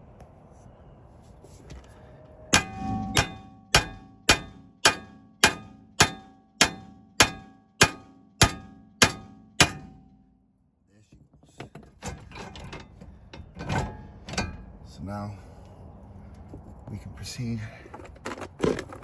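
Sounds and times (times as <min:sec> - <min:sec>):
hammer striking steel: 0:02.5 - 0:10.2.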